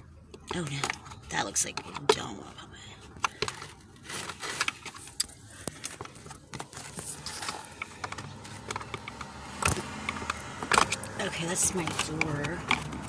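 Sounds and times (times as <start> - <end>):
hands clicking and scraping clips: 3.1 - 13.0.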